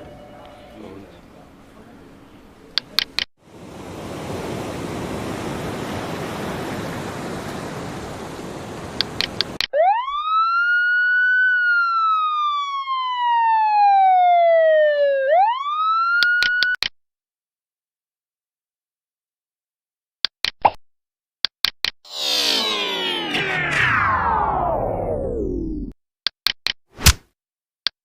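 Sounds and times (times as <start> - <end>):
siren wailing: 9.7 - 16.8, 22.1 - 25.9.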